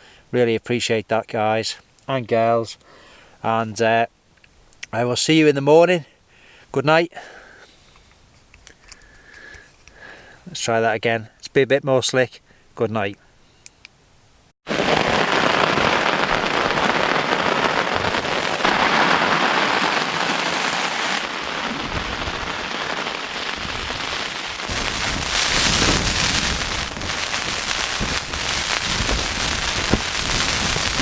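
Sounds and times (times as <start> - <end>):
heavy rain drumming on tent: 14.7 - 31.0
wind gusts buffeting: 23.5 - 31.0.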